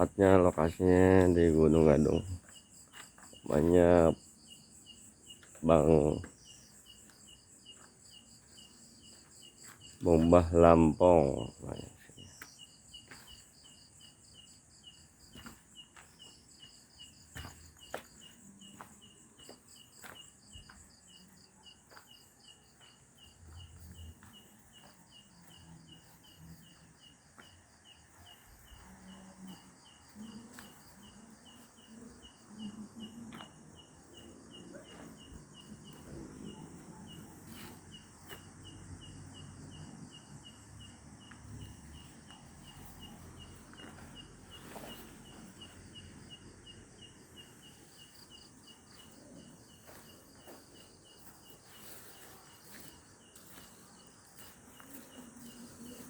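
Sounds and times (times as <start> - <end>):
crickets chirping: 0.0 - 56.0.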